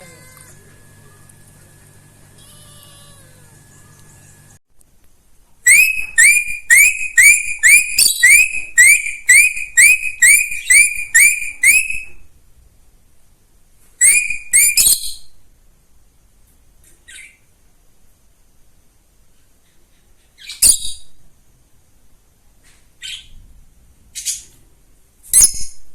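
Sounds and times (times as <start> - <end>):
small bird chirping: 0.0 - 4.6, 17.0 - 17.5, 19.6 - 21.2, 23.0 - 23.4, 24.1 - 24.6, 25.3 - 25.8.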